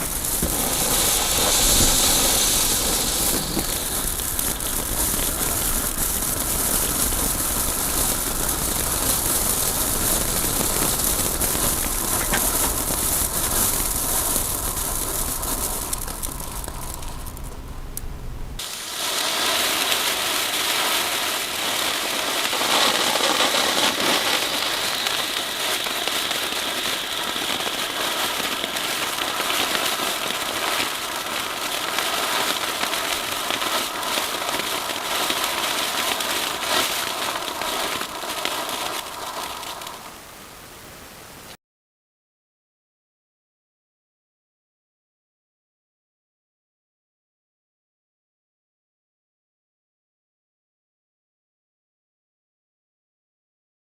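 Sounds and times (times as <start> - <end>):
firework fountain hissing: 0.0 - 41.6.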